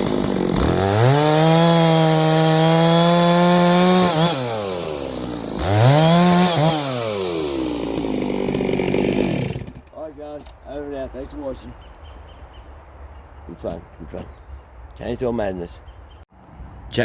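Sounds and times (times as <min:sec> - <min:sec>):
chainsaw revving: 0:00.0 - 0:09.8.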